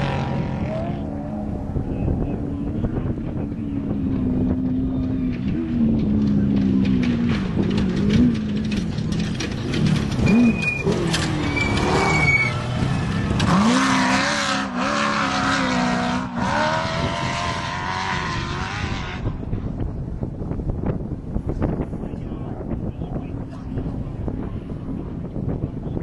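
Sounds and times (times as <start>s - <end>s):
vehicle engine revving past: 9.6s - 19.4s.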